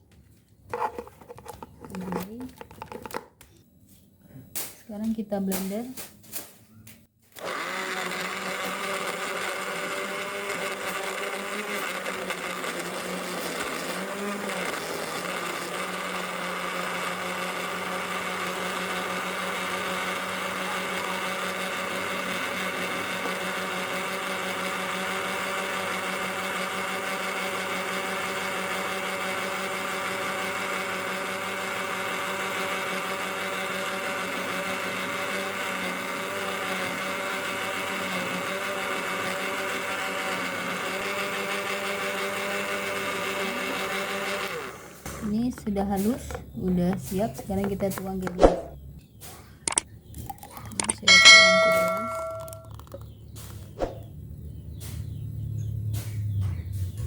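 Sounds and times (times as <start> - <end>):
blender motor running: 7.3 - 45.5.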